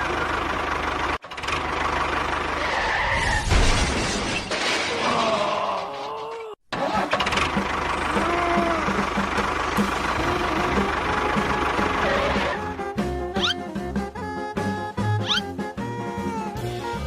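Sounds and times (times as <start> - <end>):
engine running: 0.0 - 2.7, 6.8 - 16.9
squeaky gliding tones: 11.8 - 13.7, 15.2 - 15.6.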